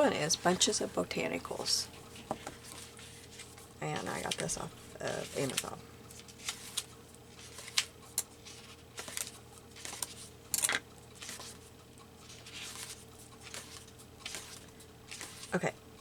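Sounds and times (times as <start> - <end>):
book pages turning: 1.9 - 15.6.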